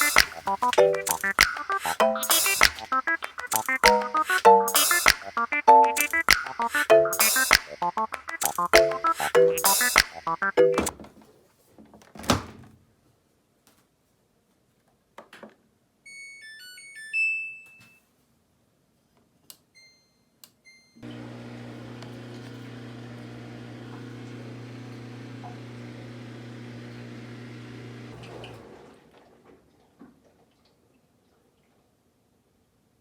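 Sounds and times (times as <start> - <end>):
electronic jingle: 0.0 - 10.9
washing machine hum: 21.0 - 30.5.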